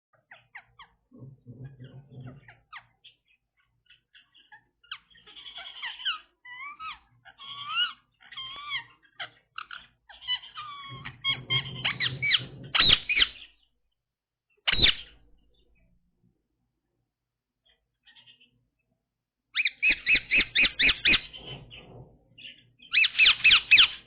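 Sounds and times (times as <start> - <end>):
parrot squeaky calls: 1.7 - 13.6, 14.7 - 15.2, 18.0 - 18.5, 19.5 - 21.7, 22.4 - 24.0.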